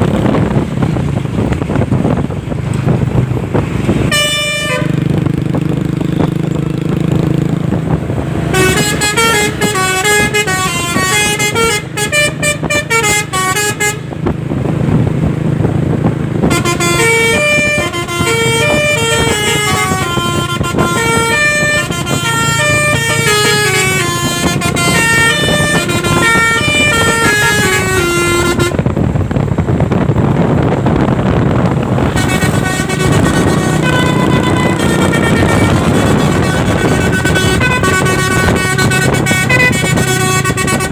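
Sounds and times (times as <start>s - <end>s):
low engine hum: 0.0s - 40.9s
musical truck horns playing tune: 3.8s - 5.8s, 7.4s - 14.6s, 16.4s - 29.2s, 31.0s - 40.9s.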